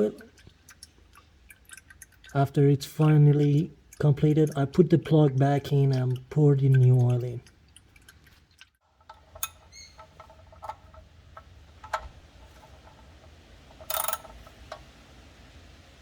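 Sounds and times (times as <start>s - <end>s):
oil dripping into container: 0.0s - 15.2s
metallic clatter: 9.0s - 14.8s.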